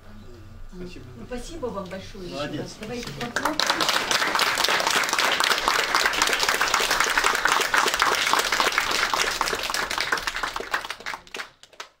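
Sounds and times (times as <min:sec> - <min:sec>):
audience applauding: 0:03.2 - 0:12.0.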